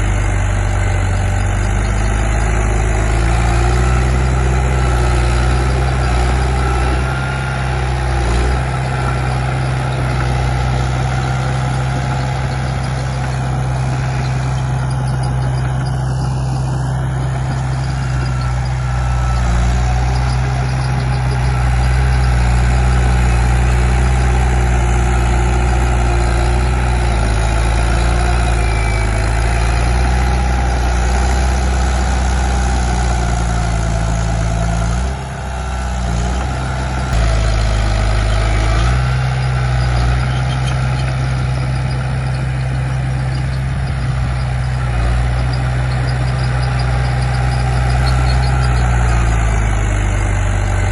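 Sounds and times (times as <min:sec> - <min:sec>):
bulldozer diesel engine running: 0:00.0 - 0:50.9.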